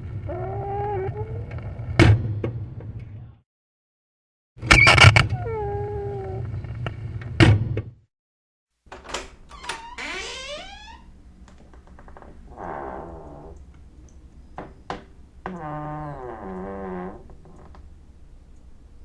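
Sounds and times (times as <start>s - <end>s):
door clunk: 8.9s - 10.9s
door hinges creaking: 8.9s - 13.7s, 14.6s - 17.8s.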